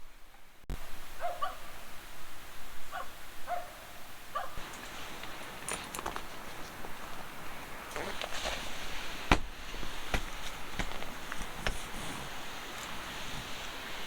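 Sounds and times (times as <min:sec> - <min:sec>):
rustling: 0:04.6 - 0:14.0.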